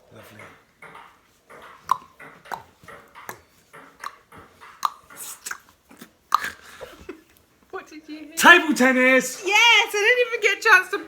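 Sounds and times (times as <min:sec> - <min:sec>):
ping-pong ball hit back and forth: 0:00.0 - 0:07.0.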